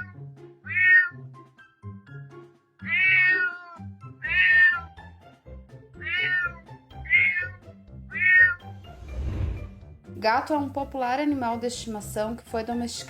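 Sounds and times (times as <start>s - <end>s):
cat meowing: 0.0s - 1.2s, 2.8s - 4.9s, 6.0s - 8.6s
soft background music: 0.0s - 13.0s.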